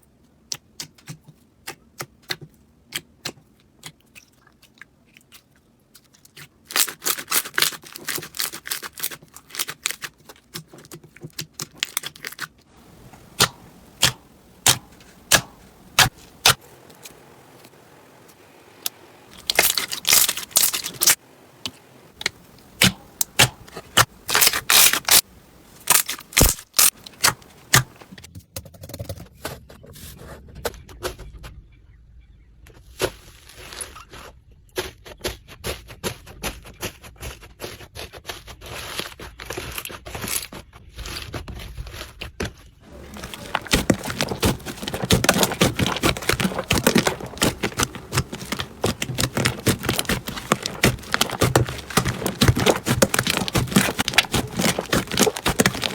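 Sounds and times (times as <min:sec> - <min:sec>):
slime crackling and popping: 0:11.6 - 0:28.2, 0:43.0 - 0:55.9.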